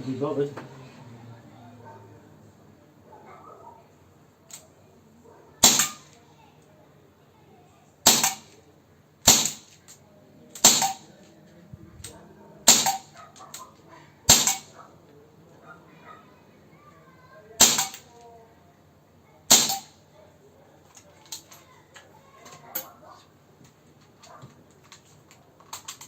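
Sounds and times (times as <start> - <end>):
air pistol shots: 5.6 - 6.2, 8.0 - 8.6, 9.2 - 9.8, 10.6 - 11.2, 12.6 - 13.2, 14.3 - 14.8, 17.6 - 18.2, 19.5 - 20.0.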